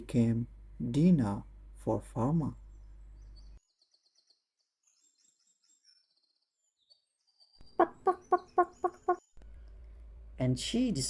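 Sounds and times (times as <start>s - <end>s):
faint bird chirps: 2.1s - 9.9s
hen clucking: 7.8s - 9.2s.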